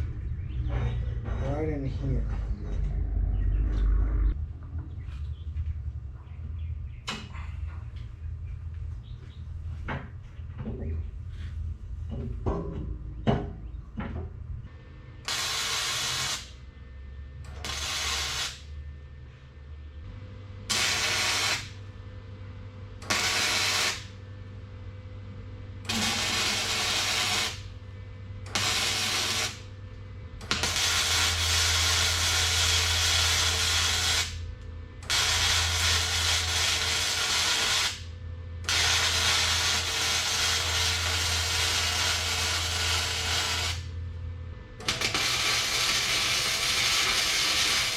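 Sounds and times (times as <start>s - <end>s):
low hum: 0.0s - 47.9s
electric welder hiss and crackle: 15.3s - 16.6s, 17.5s - 18.8s, 20.7s - 21.9s, 23.0s - 24.2s, 25.9s - 27.7s, 28.5s - 29.7s, 30.4s - 38.1s, 38.7s - 44.0s, 44.8s - 47.9s.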